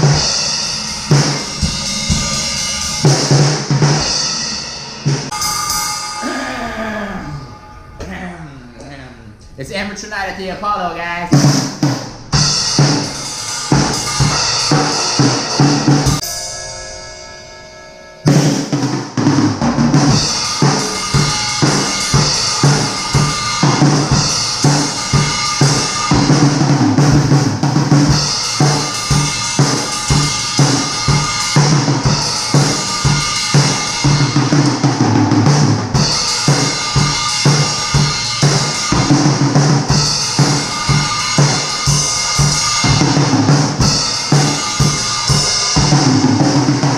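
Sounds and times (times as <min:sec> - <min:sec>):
acoustic drum kit beat: 0:00.0 - 0:08.3, 0:11.2 - 0:16.4, 0:18.3 - 0:46.9.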